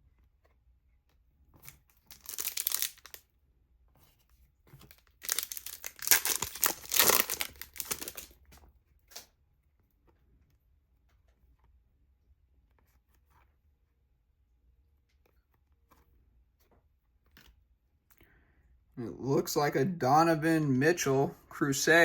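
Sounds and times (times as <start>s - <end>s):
wrapper tearing and crinkling: 2.0s - 3.2s, 4.8s - 8.4s.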